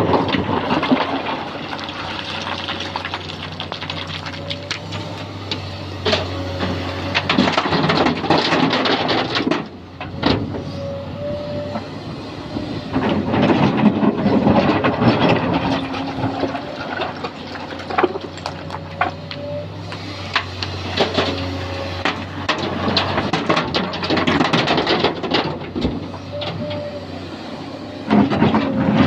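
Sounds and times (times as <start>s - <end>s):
rocks clattering and scraping: 0.0s - 5.2s, 13.1s - 19.4s, 22.0s - 25.9s
excavator diesel engine running: 0.0s - 29.0s.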